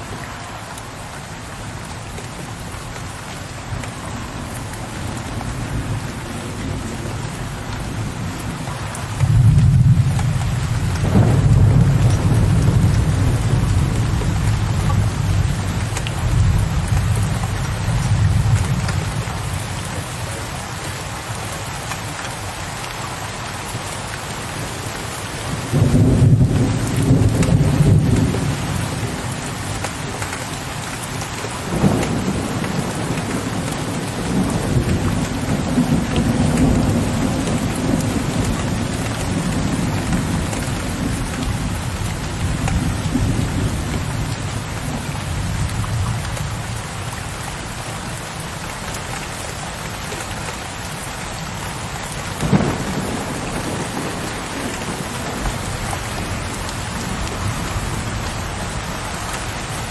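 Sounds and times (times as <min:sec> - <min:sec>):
heavy rain: 0:00.0 - 0:59.9
low rolling thunder rumble: 0:09.2 - 0:19.8, 0:25.6 - 0:29.7, 0:31.6 - 0:46.8, 0:52.4 - 0:58.9
sharp thunder cracks: 0:11.0 - 0:14.8, 0:52.4 - 0:56.3.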